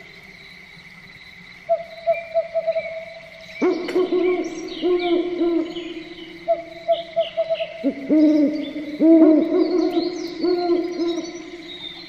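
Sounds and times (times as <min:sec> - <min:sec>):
low hooting calls: 0:03.6 - 0:12.0.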